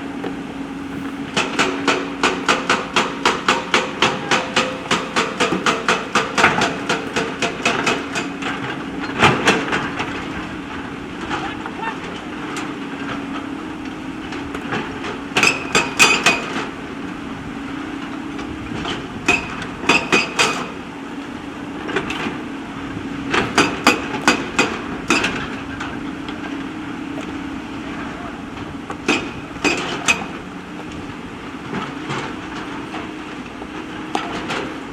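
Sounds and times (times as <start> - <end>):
diesel engine running: 0.0 - 34.9
metal bucket clanking on stones: 1.1 - 9.9.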